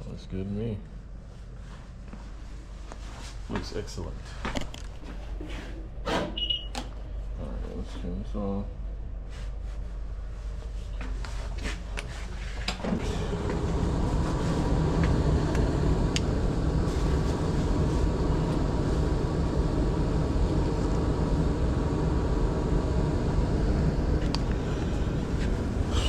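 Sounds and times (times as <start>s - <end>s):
blower motor rushing: 12.7s - 26.0s.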